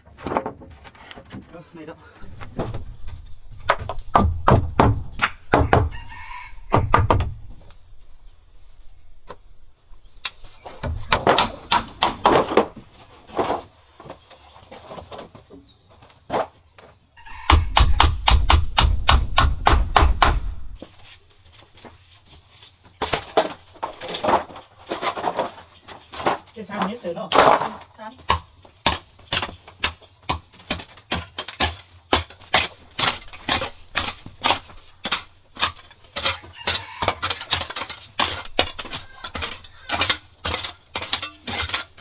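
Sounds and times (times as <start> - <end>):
heavy thuds: 2.2 - 13.0, 17.2 - 21.1
rapid knocks: 2.2 - 13.0, 17.2 - 21.0, 28.2 - 42.0.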